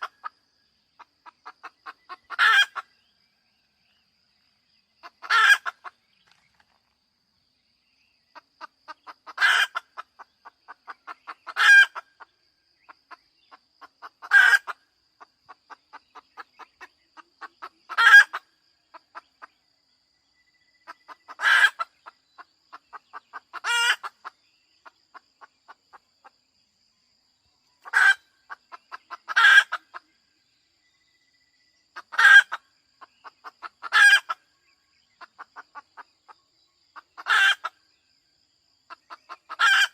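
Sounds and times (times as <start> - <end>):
hen clucking and squawking: 0.0 - 0.3, 1.0 - 2.9, 5.0 - 6.0, 8.4 - 12.3, 13.8 - 14.8, 15.5 - 19.5, 20.9 - 24.4, 27.8 - 30.0, 32.0 - 34.4, 37.0 - 37.8, 38.9 - 39.9.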